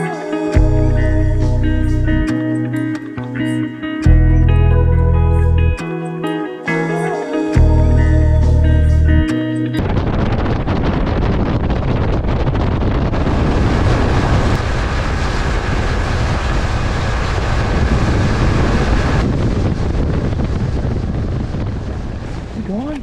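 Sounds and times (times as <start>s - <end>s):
boat rumble: 9.8s - 23.0s
water under boat: 9.8s - 23.0s
wind buffeting microphone: 9.8s - 23.0s.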